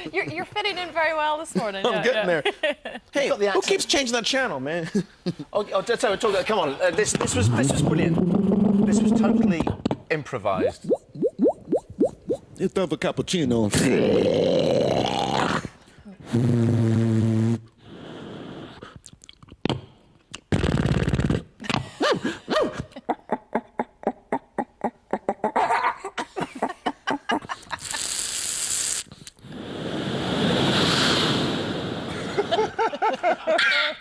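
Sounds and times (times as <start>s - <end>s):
man beatboxing: 7.2s - 9.7s, 10.6s - 12.4s.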